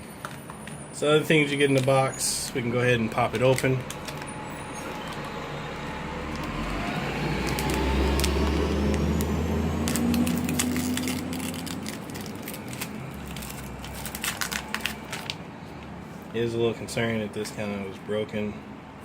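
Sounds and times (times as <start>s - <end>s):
vehicle passing rumble: 0.8s - 17.0s
box and plastic packaging opened: 7.3s - 15.4s.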